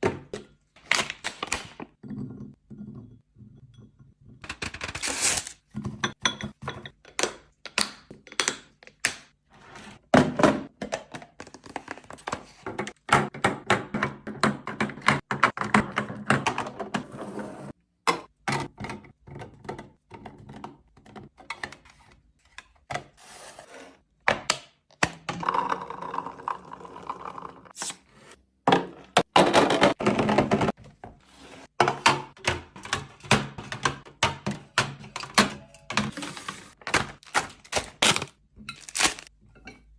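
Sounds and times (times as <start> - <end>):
packaging rustling and clattering: 36.0 - 39.3.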